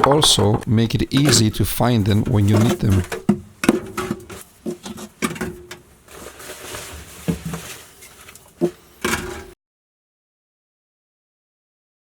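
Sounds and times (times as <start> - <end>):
knocks and clicks: 0.0 - 4.3
soft rustling: 6.0 - 9.5.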